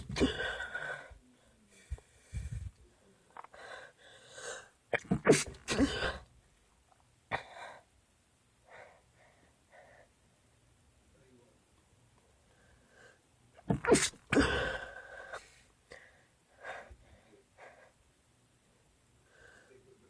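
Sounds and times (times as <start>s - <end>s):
person sneezing: 0.0s - 0.7s, 5.0s - 6.2s, 13.7s - 15.5s.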